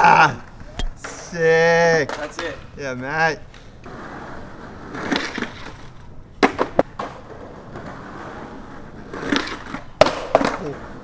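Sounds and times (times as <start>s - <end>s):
skateboard clacks: 0.0s - 11.0s
skateboard wheels rolling: 0.0s - 11.0s.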